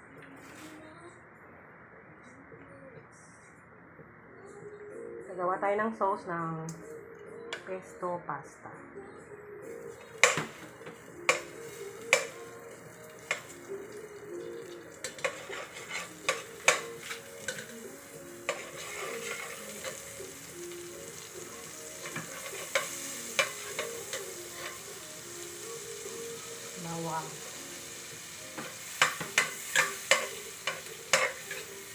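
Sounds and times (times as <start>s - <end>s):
oil sizzling: 9.7s - 31.9s.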